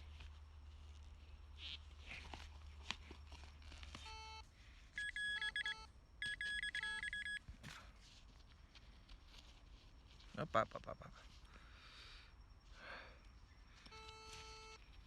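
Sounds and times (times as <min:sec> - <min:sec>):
metal detector beeping: 0:05.0 - 0:07.4, 0:13.8 - 0:14.9.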